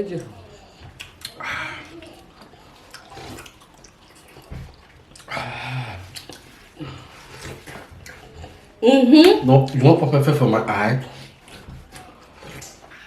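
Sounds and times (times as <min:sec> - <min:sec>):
breathy slurping: 0:00.2 - 0:08.8
wet mouth smacks and clicks: 0:01.0 - 0:01.4, 0:06.1 - 0:06.5.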